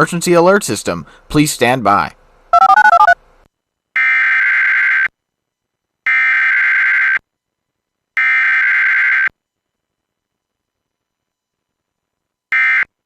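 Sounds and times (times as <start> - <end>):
digital data tone bursts: 2.6 - 3.2.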